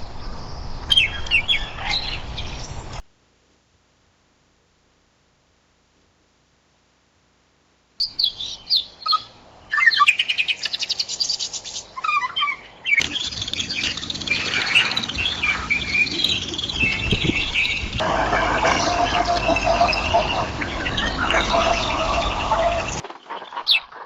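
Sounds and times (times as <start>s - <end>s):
birds chirping: 0.0s - 3.0s, 8.0s - 24.0s
birds singing: 0.0s - 3.0s, 8.0s - 24.0s
bird trilling: 12.0s - 23.9s.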